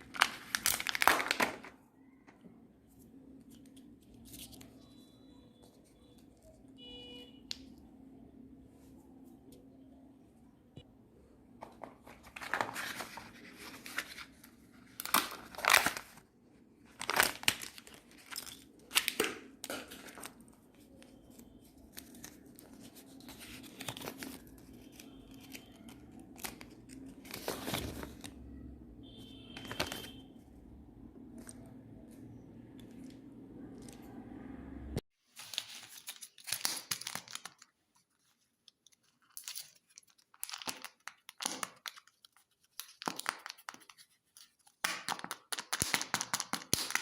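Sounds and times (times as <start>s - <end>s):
wrappers tearing and crinkling: 0.0s - 1.7s, 14.9s - 16.2s, 17.0s - 20.4s, 35.3s - 37.8s, 38.7s - 44.0s.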